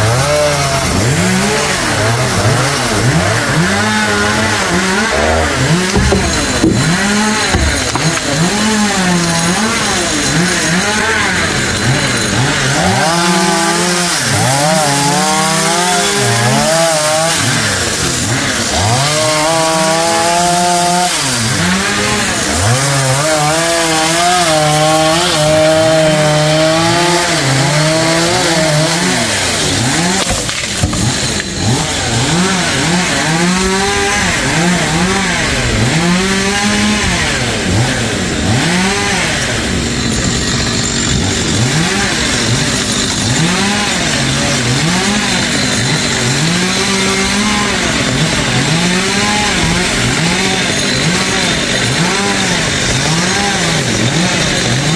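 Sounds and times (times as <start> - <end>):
chainsaw cutting wood: 0.0 - 54.9.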